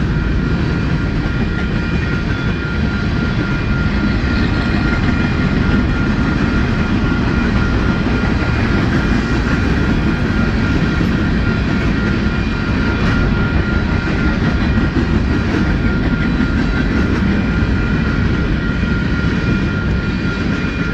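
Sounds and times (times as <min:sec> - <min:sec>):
freight train rolling past: 0:00.0 - 0:20.9.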